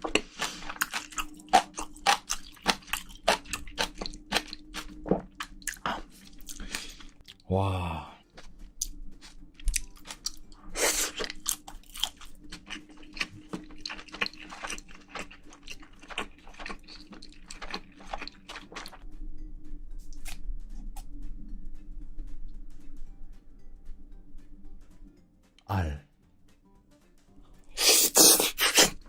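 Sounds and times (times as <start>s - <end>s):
chewing and crunching food: 0.0s - 7.5s, 8.3s - 19.1s, 20.0s - 21.2s, 27.7s - 29.0s.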